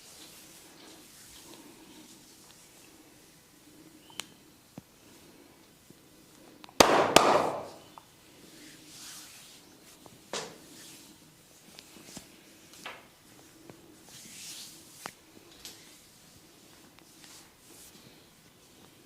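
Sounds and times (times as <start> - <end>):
faint rustling: 0.0 - 6.6.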